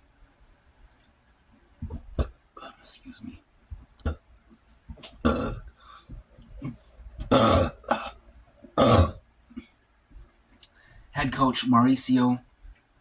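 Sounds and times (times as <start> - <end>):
man burping loudly: 5.2 - 5.7, 6.6 - 8.2, 8.8 - 9.2.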